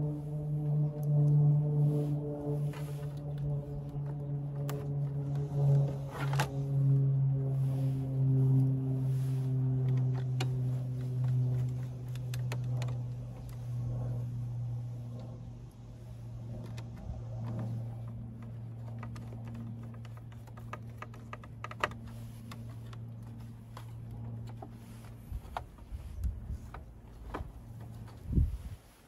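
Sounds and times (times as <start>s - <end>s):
steady low hum: 0.0s - 29.0s
plastic and metal parts clicking: 16.6s - 24.7s.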